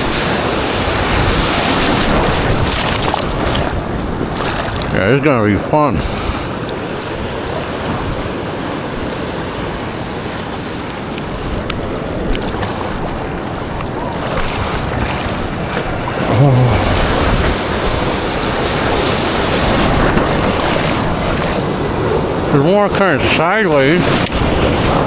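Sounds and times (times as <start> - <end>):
ocean surf splashing: 0.0 - 25.0
wind buffeting microphone: 0.0 - 25.0
brief low vocal sound: 16.3 - 17.4.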